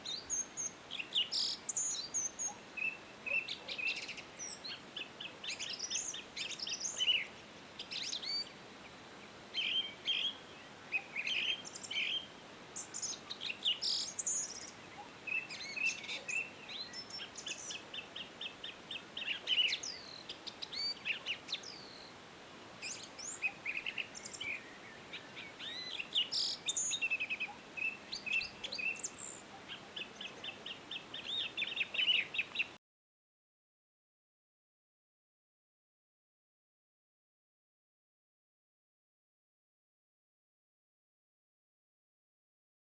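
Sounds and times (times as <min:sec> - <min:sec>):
songbirds chirping and trilling: 0:00.0 - 0:32.8.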